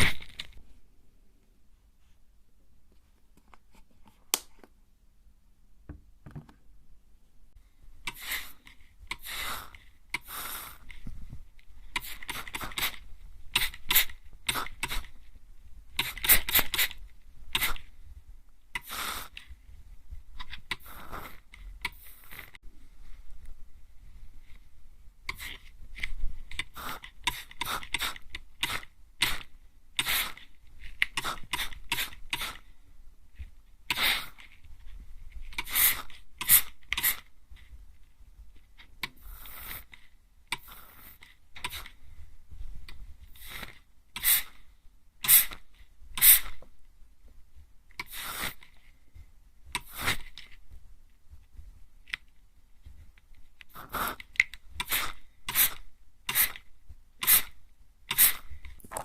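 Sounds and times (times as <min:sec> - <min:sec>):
spray bottle hissing sprays: 0:44.2 - 0:44.6, 0:45.2 - 0:45.6, 0:54.8 - 0:56.6, 0:57.2 - 0:57.5, 0:58.1 - 0:58.4.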